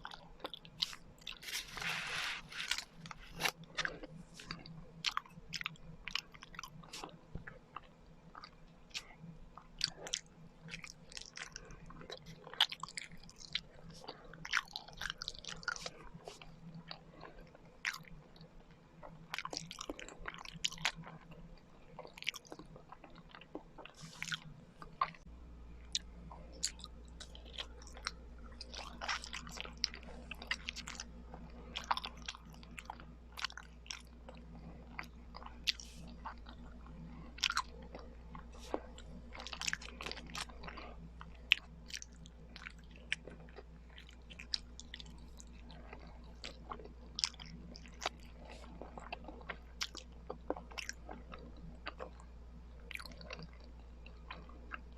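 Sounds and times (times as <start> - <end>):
chewing and biting rice cakes: 0.0 - 54.9
faint low hum: 0.0 - 54.9.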